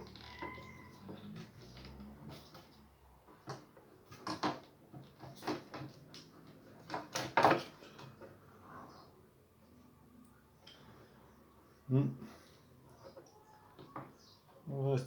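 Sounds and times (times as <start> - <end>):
objects knocking and rattling: 0.0 - 8.4.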